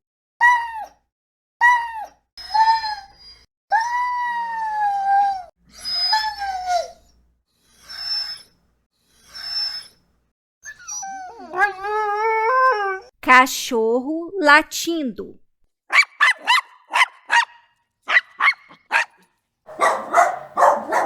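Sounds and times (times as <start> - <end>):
dog whimpering: 1.7 - 7.1, 7.7 - 10.0, 10.6 - 13.1.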